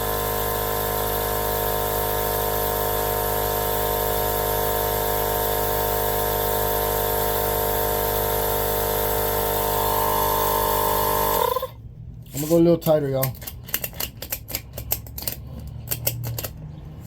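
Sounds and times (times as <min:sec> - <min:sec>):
electric air pump whining: 0:00.0 - 0:11.8.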